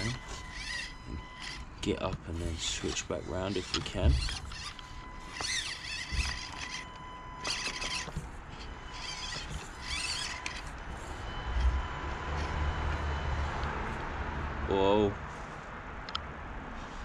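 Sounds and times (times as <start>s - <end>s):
toy car electric motor whining: 0.0s - 13.2s.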